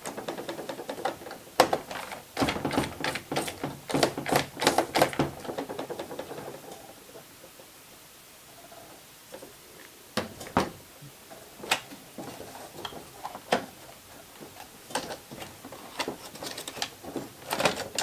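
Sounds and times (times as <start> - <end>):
robot vacuum plastic clattering: 0.2 - 6.3.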